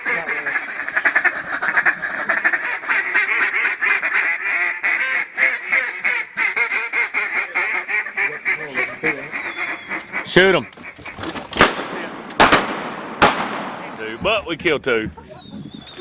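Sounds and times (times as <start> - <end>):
ducks quacking: 0.0 - 11.6.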